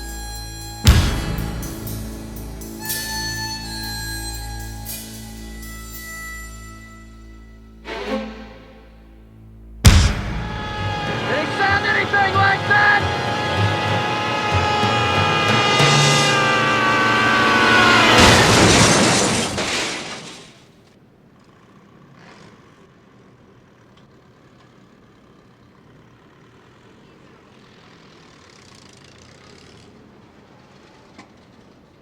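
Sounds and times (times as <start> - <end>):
orchestral chords: 0.0 - 6.0, 7.0 - 18.8
loud boom: 0.9 - 3.4, 9.8 - 20.4.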